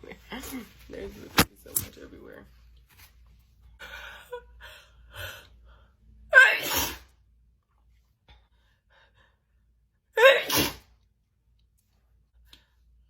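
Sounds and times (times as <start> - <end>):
woman sneezing: 6.3 - 7.1, 10.2 - 10.9.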